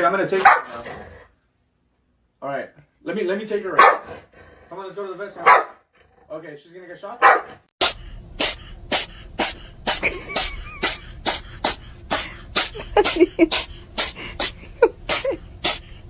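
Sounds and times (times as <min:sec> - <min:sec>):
animal cough-like huffs: 0:07.8 - 0:16.0.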